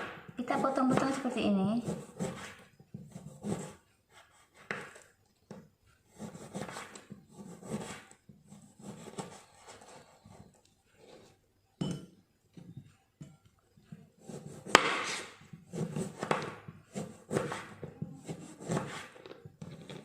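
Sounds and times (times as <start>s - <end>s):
knife scraping: 0.5s - 5.1s, 6.1s - 11.4s, 14.1s - 20.0s.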